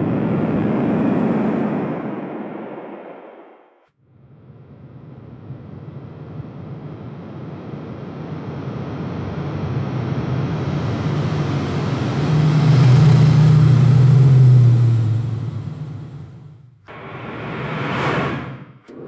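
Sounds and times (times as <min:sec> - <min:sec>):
airplane flying past: 0:16.9 - 0:19.0.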